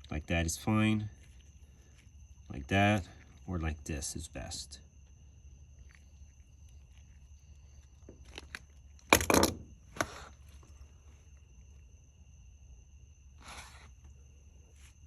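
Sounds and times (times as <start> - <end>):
parts knocking together: 8.2 - 10.2.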